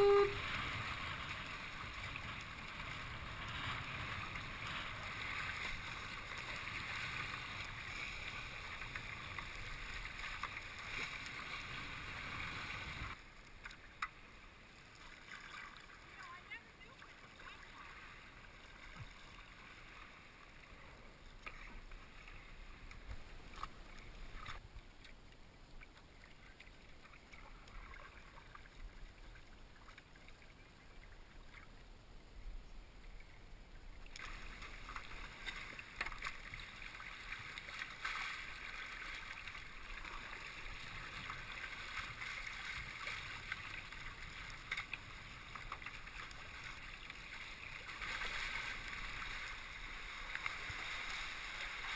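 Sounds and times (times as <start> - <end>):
water splashing and trickling: 0.0 - 32.0, 32.9 - 51.9.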